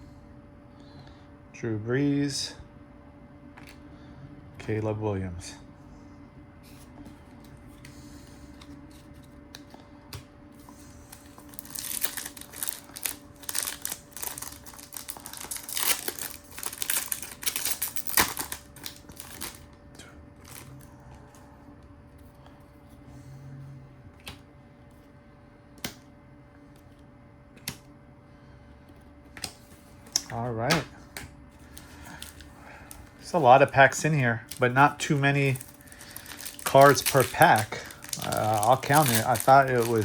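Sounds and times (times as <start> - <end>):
card pack wrappers crinkling: 10.7 - 19.7, 20.4 - 20.9, 31.6 - 40.0
cards clicking and sliding: 27.5 - 27.9, 28.9 - 33.0.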